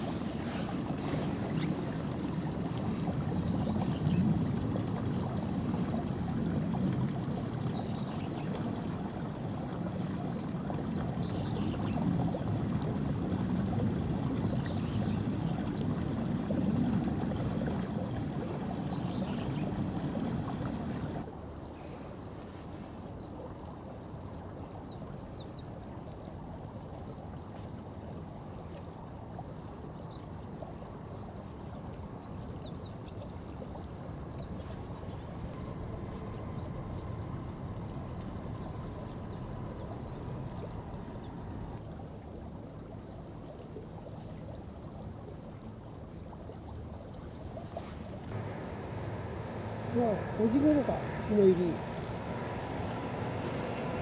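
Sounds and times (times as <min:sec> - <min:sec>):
river water rushing: 0:00.0 - 0:04.2, 0:33.9 - 0:41.8, 0:48.1 - 0:54.0.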